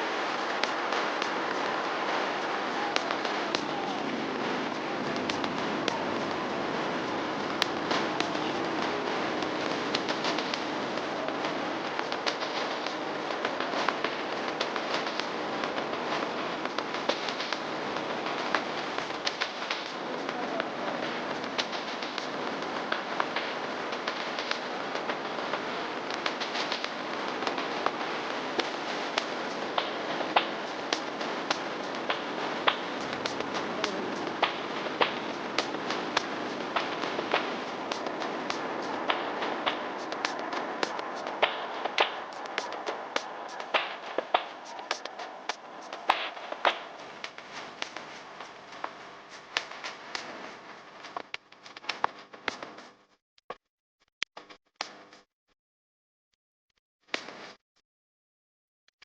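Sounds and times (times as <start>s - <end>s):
rain hiss: 0.0s - 50.0s.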